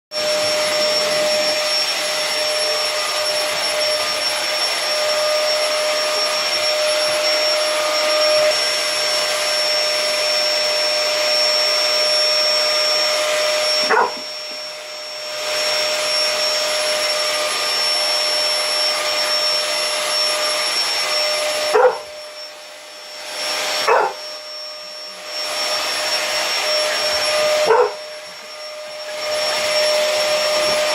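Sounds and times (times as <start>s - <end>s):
vacuum cleaner whine: 0.1s - 30.9s
dog barking: 13.8s - 14.3s, 21.7s - 22.2s, 23.8s - 24.2s, 27.6s - 28.0s.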